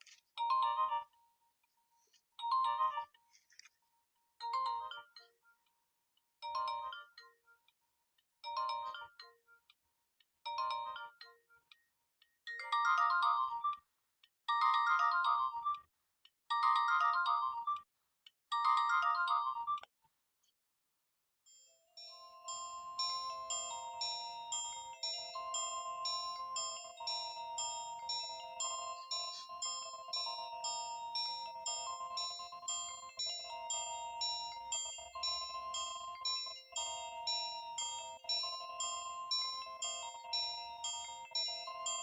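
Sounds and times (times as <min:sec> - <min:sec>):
phone ringtone melody: 0:02.5 - 0:03.1, 0:18.6 - 0:19.8, 0:21.9 - 0:42.0.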